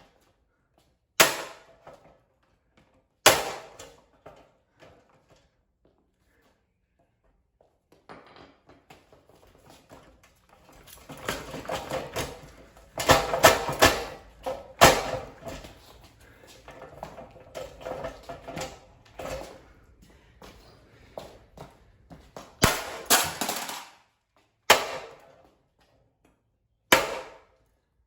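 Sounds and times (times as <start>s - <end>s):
ceiling fan being struck and broken: 1.2s - 2.1s, 3.2s - 4.1s, 10.9s - 19.6s, 22.6s - 24.0s, 24.7s - 25.5s, 26.9s - 27.6s.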